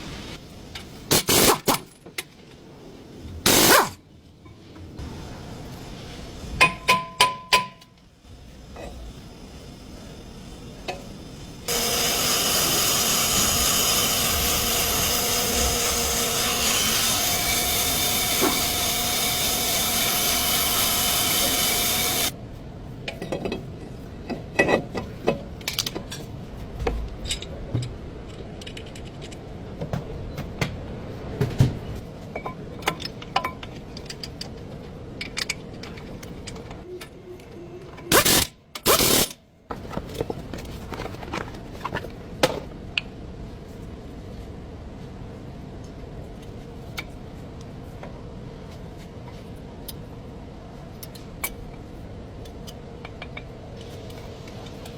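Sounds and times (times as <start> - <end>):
workshop tool hissing and whining: 0.1 - 1.8, 3.5 - 4.0, 8.3 - 22.4, 38.1 - 39.4.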